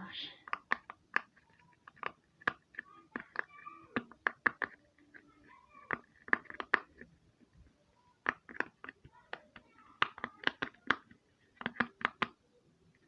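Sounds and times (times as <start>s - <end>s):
plastic fidget clicks and pops: 0.4s - 4.8s, 5.9s - 7.1s, 8.2s - 12.4s.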